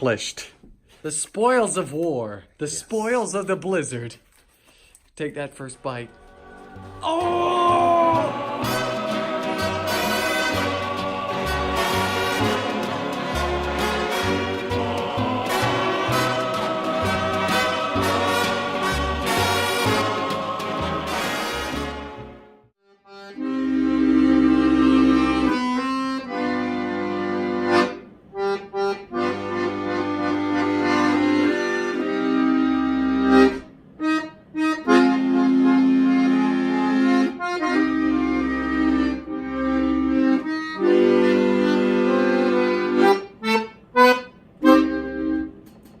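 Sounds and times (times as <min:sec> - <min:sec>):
background music chords and bass: 0:06.4 - 0:22.4.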